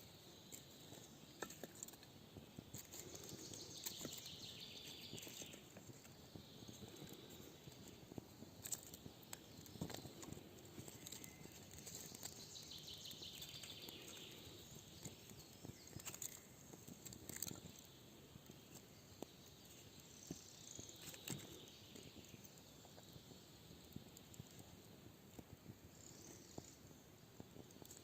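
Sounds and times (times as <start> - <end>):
faint sharp clicks and knocks: 0.5 - 12.5.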